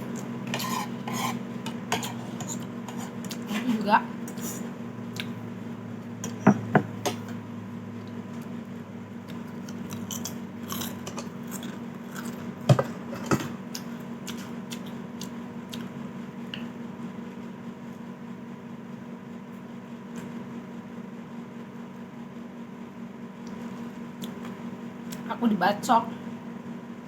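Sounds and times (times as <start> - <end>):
low electrical hum: 0.0 - 27.0.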